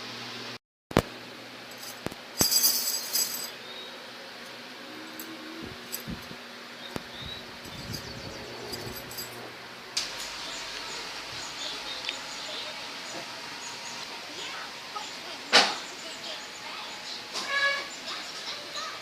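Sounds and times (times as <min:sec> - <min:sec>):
steady low hum: 0:00.0 - 0:19.0
high-pitched clinking: 0:01.7 - 0:03.6.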